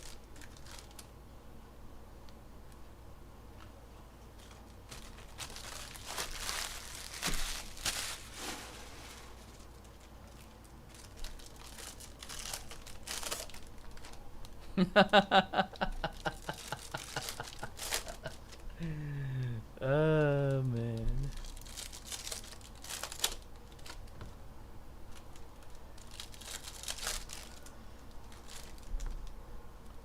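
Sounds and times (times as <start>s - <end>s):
wrappers tearing and crinkling: 0.0s - 1.1s, 4.3s - 14.6s, 15.8s - 18.7s, 20.3s - 24.2s, 25.1s - 29.3s.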